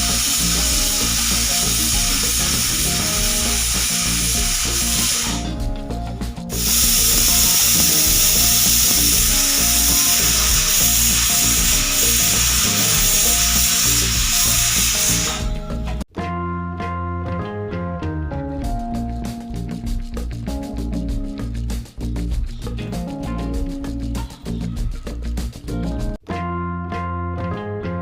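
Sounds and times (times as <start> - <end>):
pressure cooker steam hissing: 0.0 - 5.5, 6.5 - 15.6.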